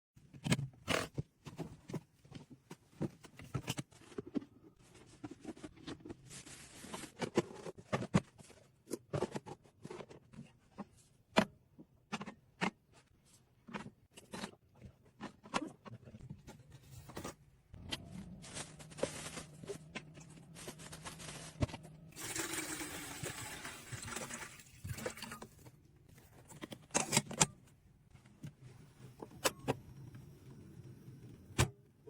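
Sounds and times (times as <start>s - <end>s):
rustling and scraping: 1.0s - 11.2s, 12.9s - 22.2s.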